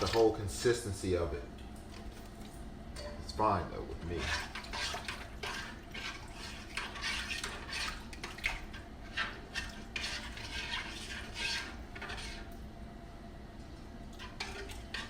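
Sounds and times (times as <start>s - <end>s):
spoon stirring sauce in a pot: 3.9s - 12.6s, 14.1s - 15.0s.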